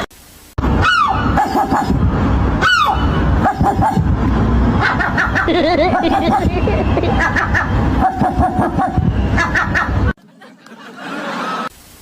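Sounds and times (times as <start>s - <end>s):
animal yelping: 0.8s - 2.0s, 2.6s - 4.0s, 4.8s - 10.1s.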